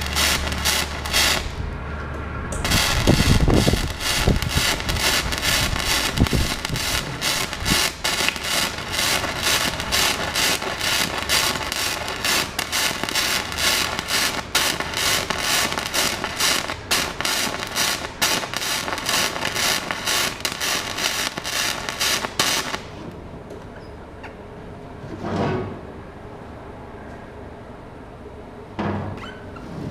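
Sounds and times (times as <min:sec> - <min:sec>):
welding arc crackling: 0:00.0 - 0:01.8, 0:02.5 - 0:23.0.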